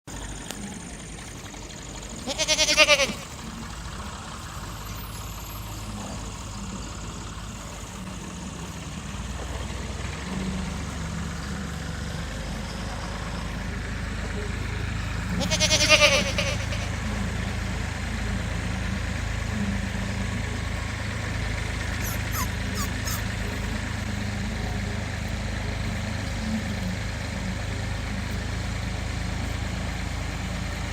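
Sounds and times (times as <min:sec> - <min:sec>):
goat bleating: 0:02.2 - 0:03.4, 0:15.3 - 0:17.0, 0:22.0 - 0:23.5.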